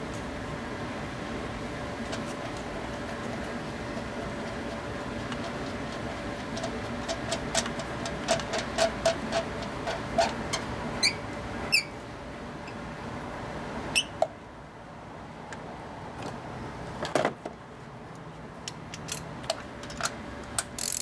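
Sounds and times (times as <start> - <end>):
faint steady hum: 0.0 - 21.0
metallic clicks from hand tools: 18.6 - 21.0.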